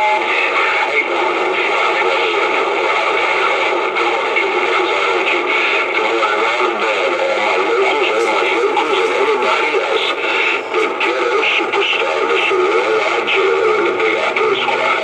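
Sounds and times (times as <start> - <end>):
radio static: 0.0 - 15.0.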